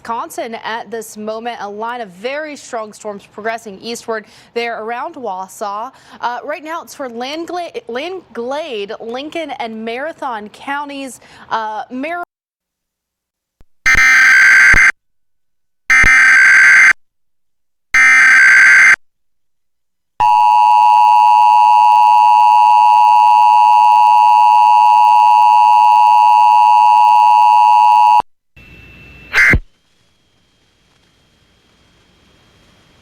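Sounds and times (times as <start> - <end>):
warbling digital data screech: 28.6 - 29.6.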